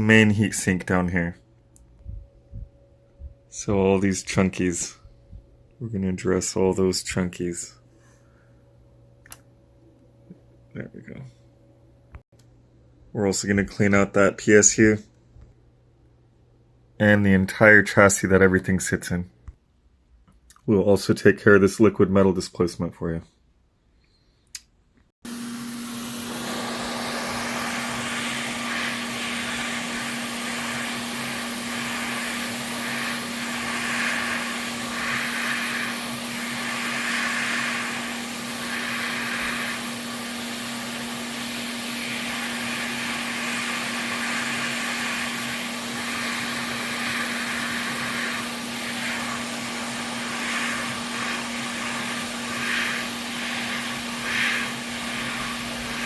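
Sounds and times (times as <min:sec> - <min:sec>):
electric cleaning tool motor: 0:25.3 - 0:56.0
rushing air: 0:25.8 - 0:56.0.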